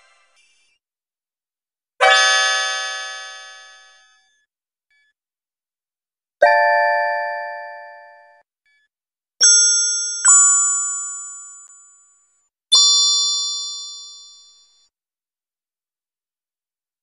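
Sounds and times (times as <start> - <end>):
bell-like ding chime: 9.4 - 14.5.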